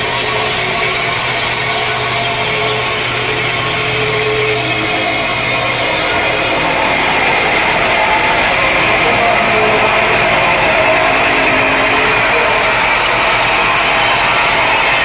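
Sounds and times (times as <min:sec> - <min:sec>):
machine hum: 0:00.0 - 0:15.0
sawmill saw cutting log: 0:00.0 - 0:15.0.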